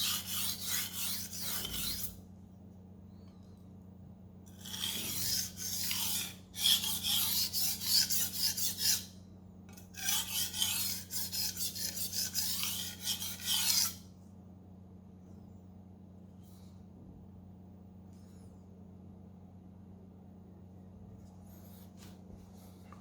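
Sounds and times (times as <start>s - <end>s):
knife scraping on whetstone: 0.0s - 2.2s, 4.5s - 9.1s, 9.8s - 14.0s.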